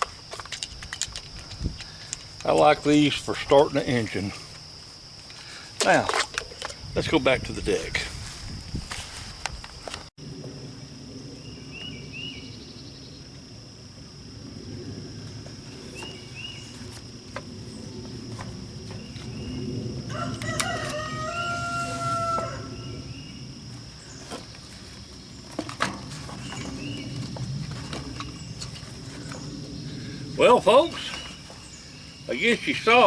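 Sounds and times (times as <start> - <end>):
high-pitched insect drone: 0.0 - 25.7
rooster crowing: 20.0 - 23.0.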